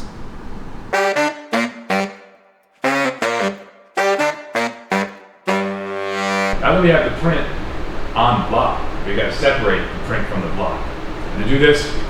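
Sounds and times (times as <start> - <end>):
punchy saxophone music: 0.9 - 6.6.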